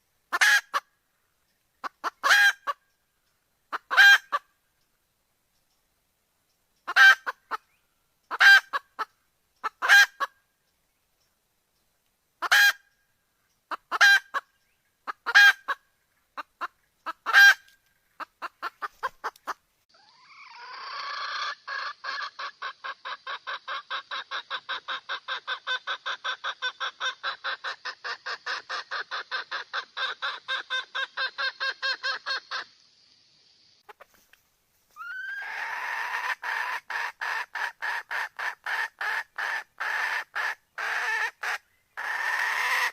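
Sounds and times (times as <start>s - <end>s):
hen clucking: 0.3s - 0.9s, 1.8s - 2.8s, 3.7s - 4.5s, 6.8s - 7.7s, 8.3s - 10.4s, 12.4s - 12.8s, 13.7s - 15.8s, 16.4s - 32.8s, 33.8s - 34.3s, 34.9s - 42.9s.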